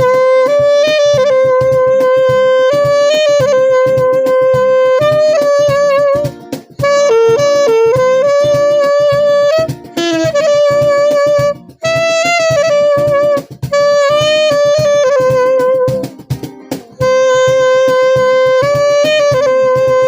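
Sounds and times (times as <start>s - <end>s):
rhythmic accompaniment: 0.0s - 20.0s
saxophone melody: 0.0s - 20.0s.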